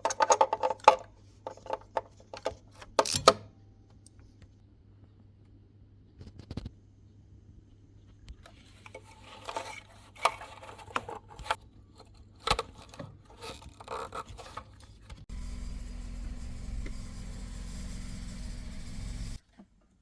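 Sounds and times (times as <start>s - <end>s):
parts clicking and scraping: 0.0s - 4.3s, 8.4s - 17.4s
car engine idling: 15.3s - 19.4s.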